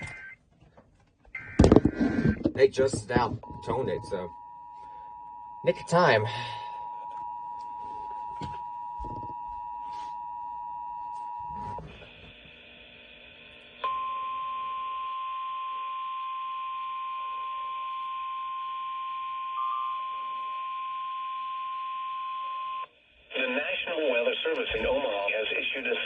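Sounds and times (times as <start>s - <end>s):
two-tone alarm from radio: 1.4s - 2.5s, 3.4s - 12.0s.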